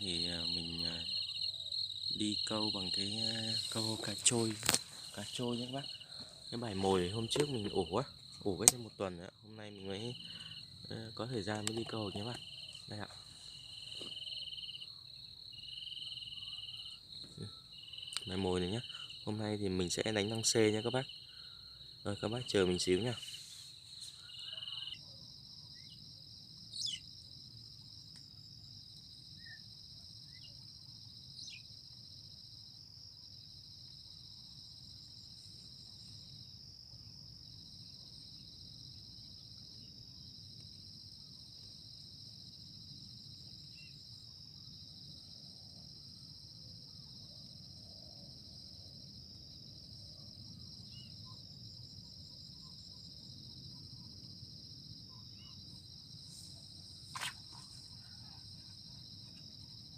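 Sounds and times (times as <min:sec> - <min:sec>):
insects singing: 0:00.0 - 0:59.9
sharp click: 0:04.6 - 0:04.9.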